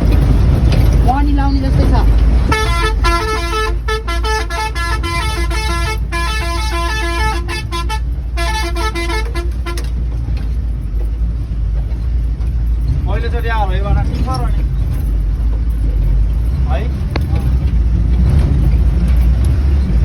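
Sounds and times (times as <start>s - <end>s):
engine and road rumble: 0.0s - 20.0s
musical vehicle horn tune: 2.5s - 10.0s.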